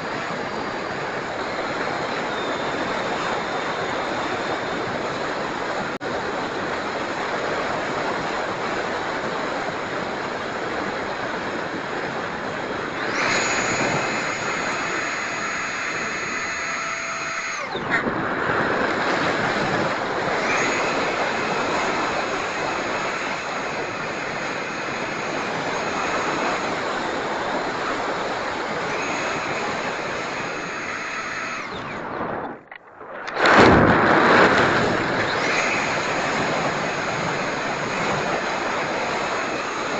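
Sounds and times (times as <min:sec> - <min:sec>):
electric ducted fan whining: 0:00.0 - 0:39.9
steady rushing noise: 0:00.0 - 0:39.9
loud rush: 0:31.6 - 0:39.0.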